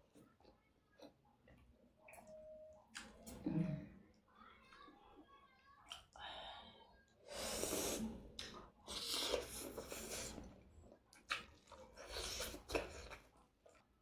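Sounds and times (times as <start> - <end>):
person chewing: 7.5 - 13.9.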